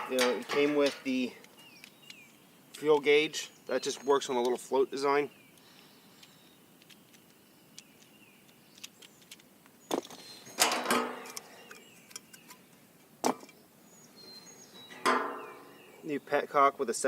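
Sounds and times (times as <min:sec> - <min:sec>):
light clicks of small parts: 0:00.6 - 0:03.2, 0:05.5 - 0:10.2.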